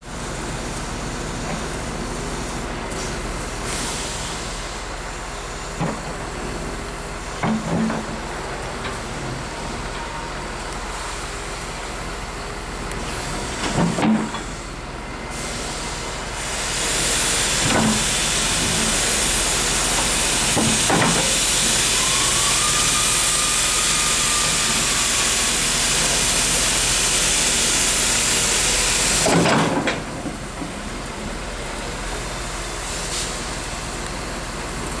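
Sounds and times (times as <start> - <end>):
loud steady hiss: 15.3 - 29.6.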